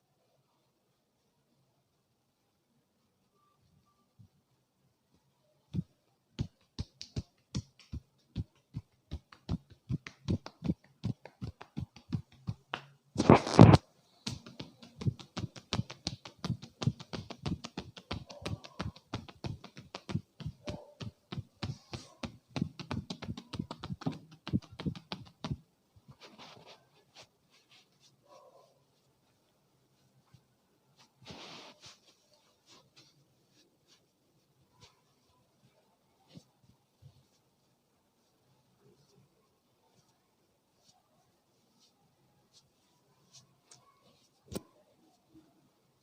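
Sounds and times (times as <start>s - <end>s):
hands tapping a head: 5.7s - 26.2s.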